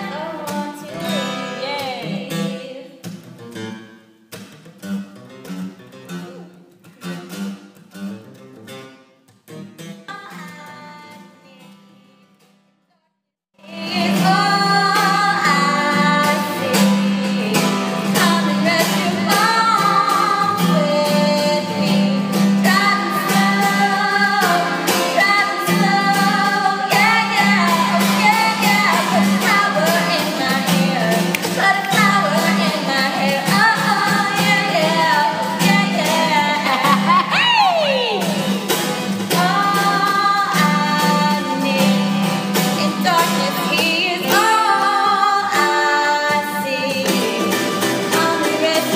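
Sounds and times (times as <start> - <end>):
woman singing with accompaniment: 0.0 - 3.1, 10.1 - 12.4, 13.6 - 48.9.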